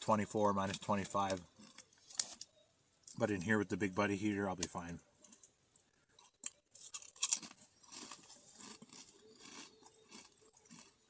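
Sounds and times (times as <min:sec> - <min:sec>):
potato chips crunching: 0:01.6 - 0:02.4, 0:06.4 - 0:11.0.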